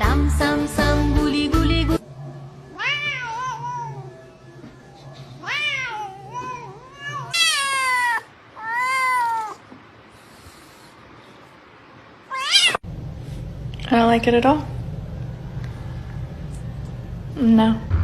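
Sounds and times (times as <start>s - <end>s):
cat meowing: 2.8s - 4.2s, 5.4s - 9.6s, 12.3s - 12.8s
low steady hum: 12.8s - 18.0s.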